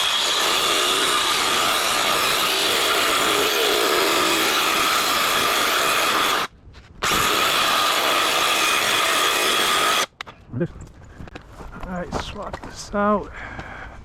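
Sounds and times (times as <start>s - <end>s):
power saw cutting wood: 0.0s - 10.1s.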